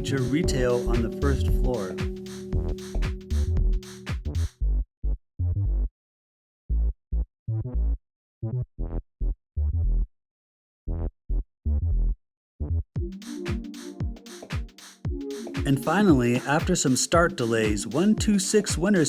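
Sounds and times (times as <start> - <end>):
electronic music bass and drums: 0.0 - 4.5, 13.0 - 19.0.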